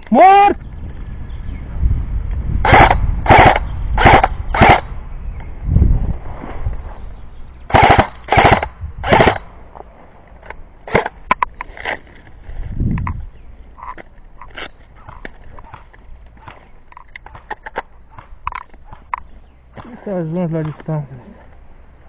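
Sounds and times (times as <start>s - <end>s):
airsoft guns firing in bursts: 2.6s - 4.9s, 7.7s - 9.5s.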